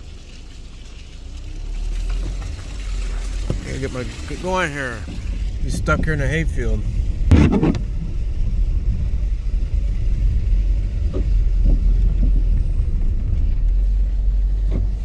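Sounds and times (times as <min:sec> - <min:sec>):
vehicle driving through mud: 0:00.0 - 0:15.0
sharp thump: 0:07.3 - 0:07.9.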